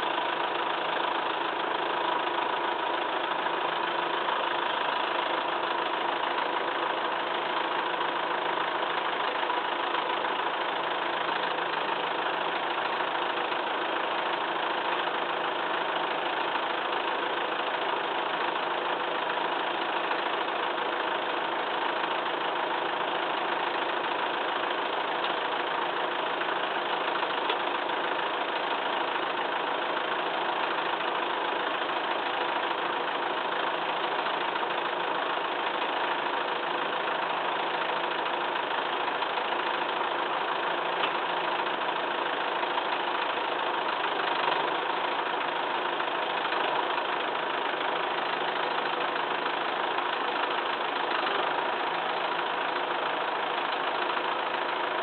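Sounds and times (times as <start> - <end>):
tractor engine idling: 0.0 - 55.0.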